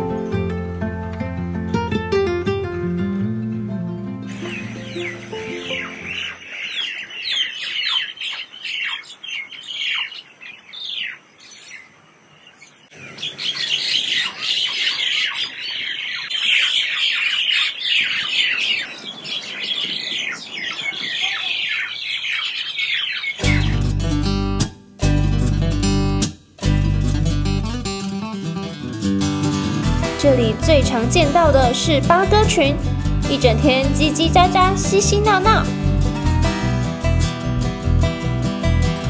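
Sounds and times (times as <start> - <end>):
flock of birds chirping: 4.3 - 23.9.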